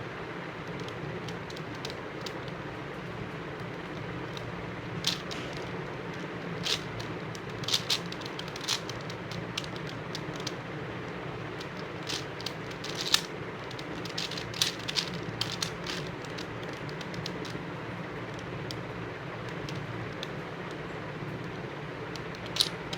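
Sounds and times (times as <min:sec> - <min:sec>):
steady low hum: 0:00.0 - 0:22.9
puzzle cube layers clicking: 0:11.6 - 0:17.6.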